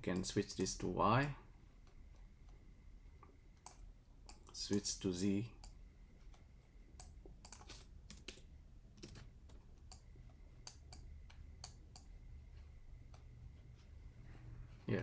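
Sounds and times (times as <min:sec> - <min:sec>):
keyboard and mouse clicks: 0:03.2 - 0:04.9, 0:05.6 - 0:12.2.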